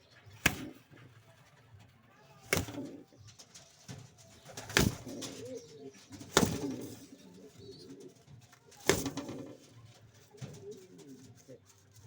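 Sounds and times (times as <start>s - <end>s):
pigeons cooing: 2.3s - 3.5s, 4.3s - 11.9s.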